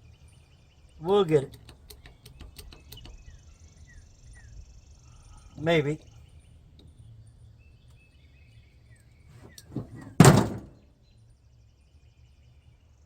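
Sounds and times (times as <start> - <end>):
faint crimping tool clicks: 1.5 - 3.4
crimping tool thunk: 9.7 - 10.8.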